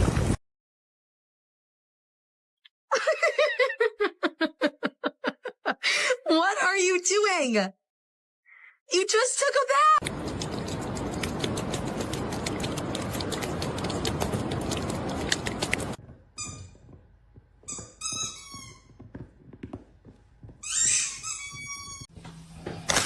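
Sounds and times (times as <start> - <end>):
scattered clicks: 10.0 - 16.0
small animal squeaky calls: 20.6 - 22.1.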